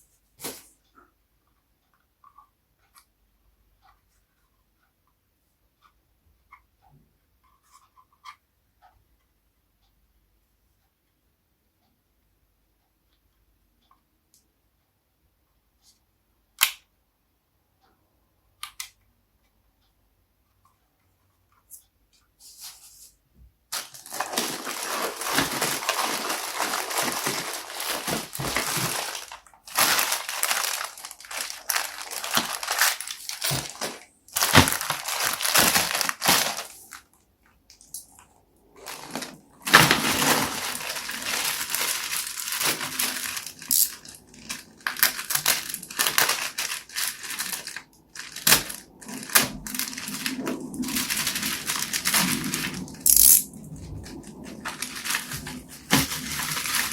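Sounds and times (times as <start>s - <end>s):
packaging crinkling and rustling: 23.7s - 37.1s, 38.8s - 56.9s.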